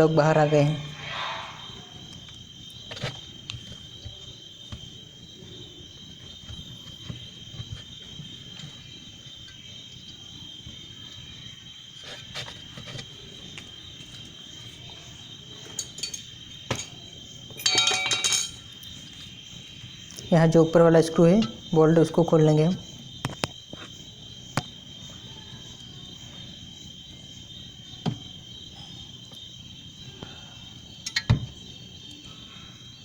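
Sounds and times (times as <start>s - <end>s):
high insect-like chirring: 0.0s - 33.0s
light clicks and knocks of parts: 31.0s - 31.6s.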